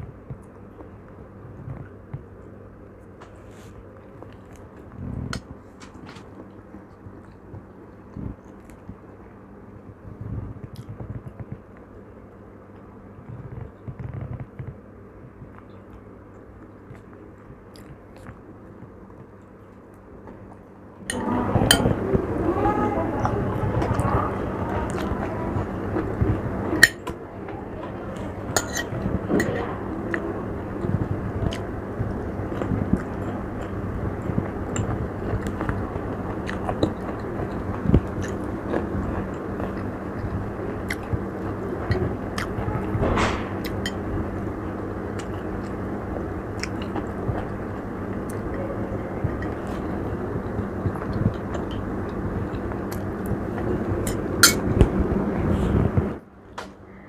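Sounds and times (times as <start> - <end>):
steady low hum: 0.0 - 57.0
cutlery clinking on a plate: 28.6 - 29.6
person chewing food: 30.8 - 42.5, 46.6 - 48.6.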